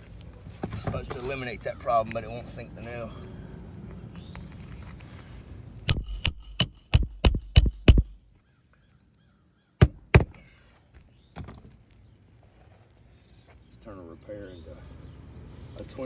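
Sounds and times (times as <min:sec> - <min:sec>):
hammer striking a nail: 0:05.9 - 0:08.2, 0:09.8 - 0:10.4.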